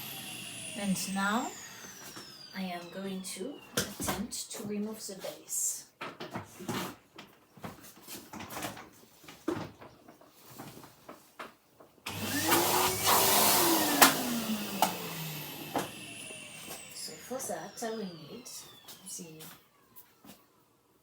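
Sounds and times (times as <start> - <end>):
vacuum cleaner motor whine: 0.0 - 4.3, 12.1 - 20.6.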